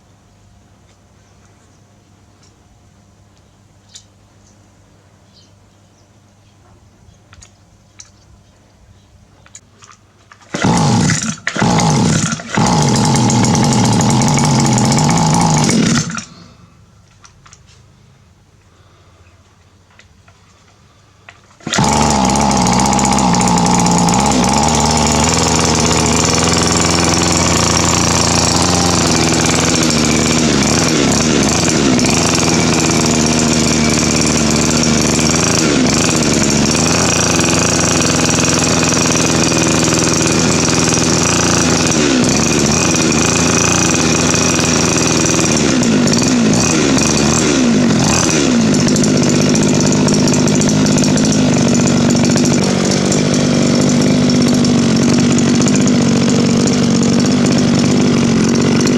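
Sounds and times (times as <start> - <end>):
string trimmer engine running: 10.4 - 16.6, 21.3 - 58.9.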